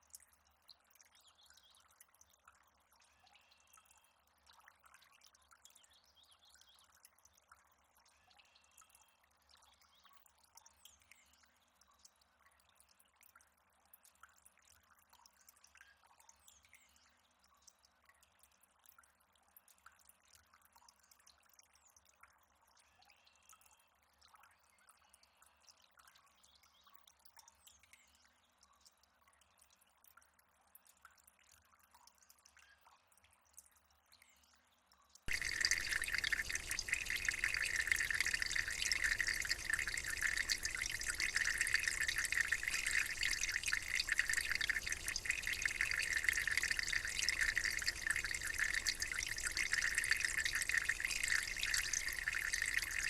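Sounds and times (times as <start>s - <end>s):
faint water drips: 0.0s - 53.0s
running water splashing: 35.3s - 53.0s.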